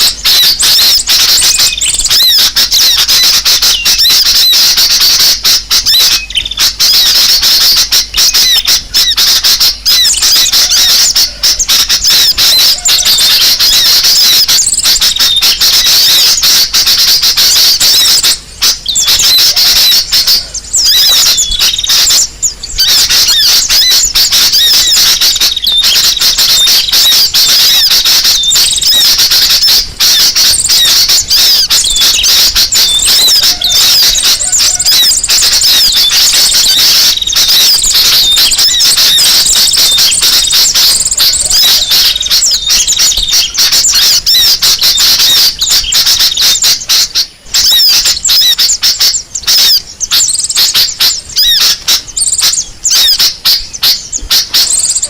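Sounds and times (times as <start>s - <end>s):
flock of small birds chirping: 0.0s - 55.0s.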